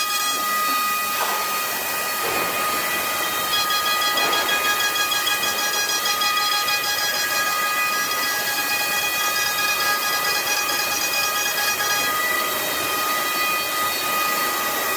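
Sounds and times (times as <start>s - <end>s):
cnc router spindle whining: 0.0s - 14.9s.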